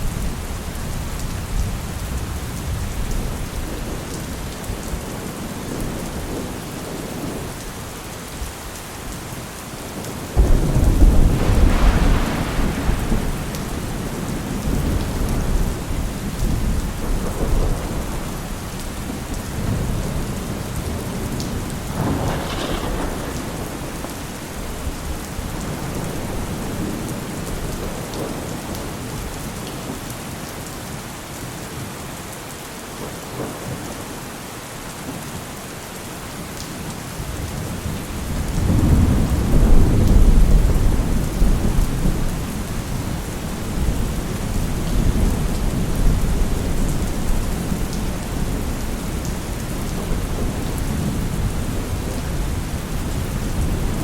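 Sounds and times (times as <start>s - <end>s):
heavy rain: 0.0s - 54.0s
thunder rumbling: 10.0s - 29.3s, 37.4s - 54.0s.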